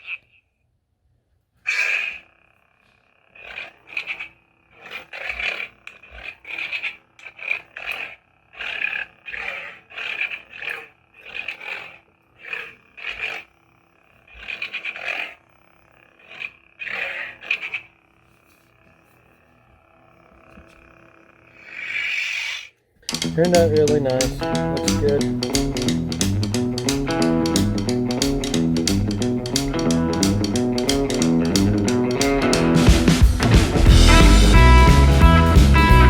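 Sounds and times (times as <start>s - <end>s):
lightsaber hum: 1.7s - 36.0s.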